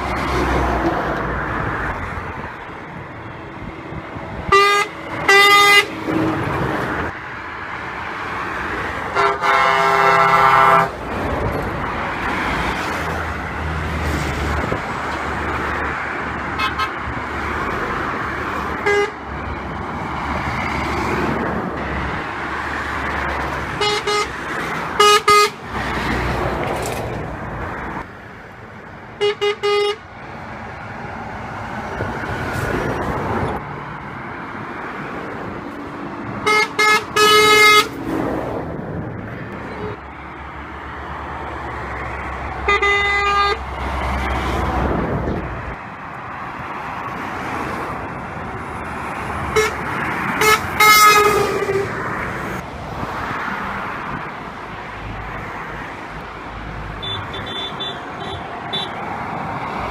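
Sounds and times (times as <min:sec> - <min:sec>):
trucks passing: 0:00.0 - 0:59.9
truck horns tooting: 0:04.4 - 0:06.4, 0:09.1 - 0:11.0, 0:16.5 - 0:17.1, 0:18.7 - 0:19.3, 0:23.6 - 0:25.8, 0:29.2 - 0:30.1, 0:36.4 - 0:38.1, 0:39.6 - 0:40.1, 0:42.6 - 0:43.8, 0:49.5 - 0:52.1, 0:57.0 - 0:59.1.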